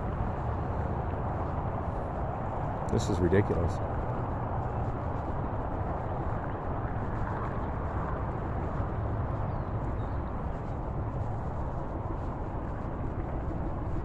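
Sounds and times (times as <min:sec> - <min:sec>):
road rumble: 0:00.0 - 0:09.6
wind noise: 0:00.0 - 0:14.0.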